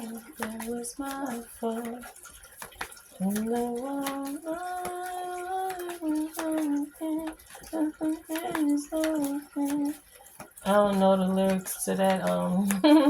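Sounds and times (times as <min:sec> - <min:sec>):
woman humming: 0:12.5 - 0:13.0.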